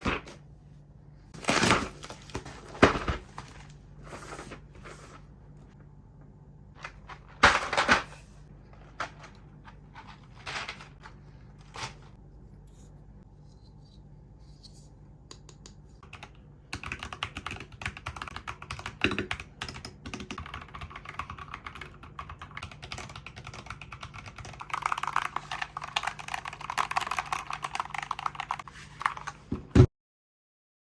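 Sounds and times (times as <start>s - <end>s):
mechanical keyboard typing: 16.0s - 29.4s.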